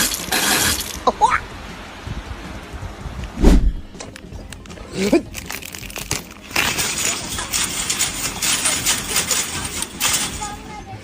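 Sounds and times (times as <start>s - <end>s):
dense crinkling and rustling: 5.2s - 10.6s.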